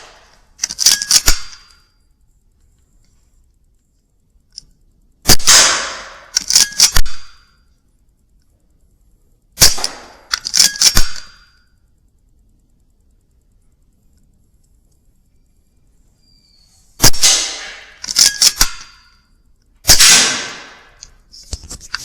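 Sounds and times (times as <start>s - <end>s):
metallic clicks: 0.0s - 1.9s, 6.2s - 7.4s, 9.6s - 11.8s, 17.6s - 20.0s
air rifle shots: 5.2s - 7.4s, 9.6s - 11.4s, 17.0s - 19.0s, 19.8s - 21.0s.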